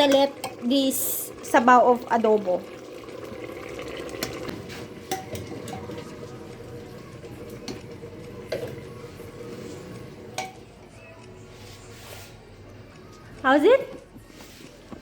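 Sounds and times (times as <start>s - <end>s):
broth simmering and bubbling: 0.0s - 10.9s.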